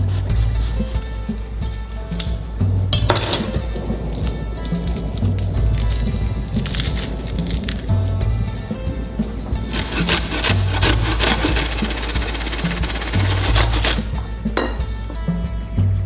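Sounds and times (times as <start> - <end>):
rasping rubbing of food preparation: 0.0 - 1.8, 4.0 - 14.5
background music with bass line: 0.0 - 16.0.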